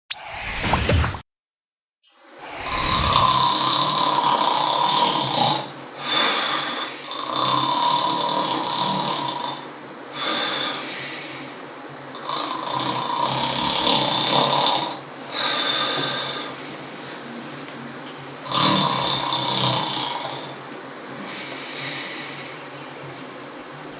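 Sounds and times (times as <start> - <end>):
man snoring loudly: 2.5 - 11.3, 12.1 - 16.5, 18.4 - 20.6.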